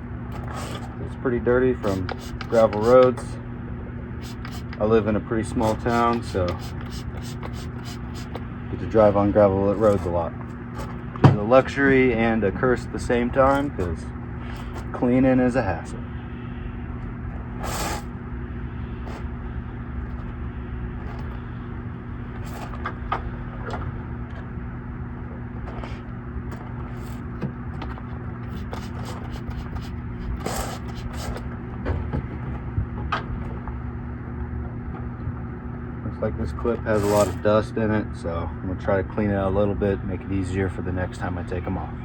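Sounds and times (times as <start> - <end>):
low engine-like hum: 0.0 - 42.0
rag rubbing and scraping: 0.3 - 3.3, 4.2 - 11.8, 13.1 - 15.0, 17.4 - 18.1, 18.9 - 19.3, 21.0 - 21.5, 22.3 - 23.0, 25.6 - 31.5, 36.5 - 37.5
spray bottle hissing: 5.6 - 8.4, 17.6 - 18.1.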